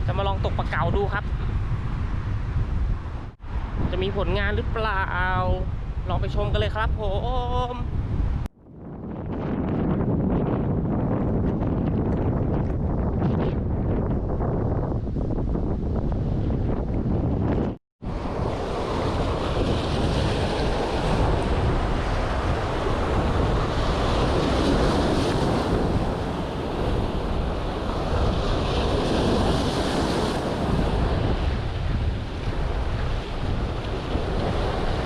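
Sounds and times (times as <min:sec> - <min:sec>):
wind buffeting microphone: 0:00.0 - 0:35.0
surf breaking on a beach: 0:18.0 - 0:35.0.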